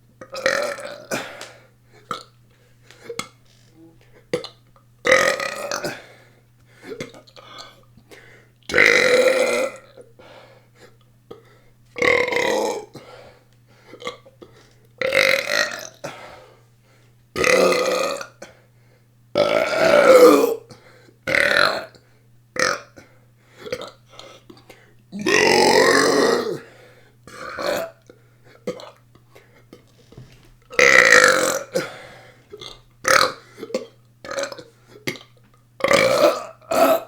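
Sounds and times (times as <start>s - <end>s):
person belching loudly: 0.2s - 1.3s, 4.4s - 6.0s, 8.7s - 9.9s, 12.0s - 13.0s, 15.0s - 16.0s, 17.4s - 18.4s, 19.4s - 20.7s, 21.3s - 21.9s, 25.1s - 26.6s, 27.3s - 28.0s, 30.7s - 31.9s, 32.6s - 37.0s.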